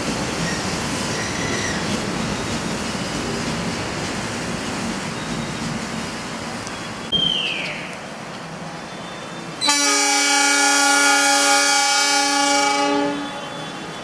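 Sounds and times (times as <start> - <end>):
falling squeal: 0.5 - 2.5
train horn blast: 9.6 - 13.7.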